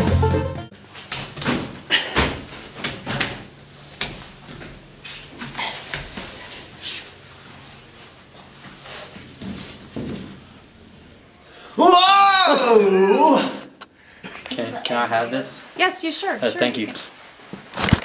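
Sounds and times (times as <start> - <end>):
music: 0.0 - 0.7.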